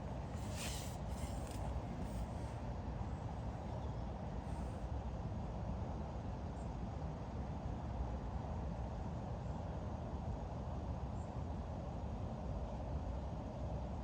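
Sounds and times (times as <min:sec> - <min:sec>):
short hiss: 0:00.0 - 0:02.6.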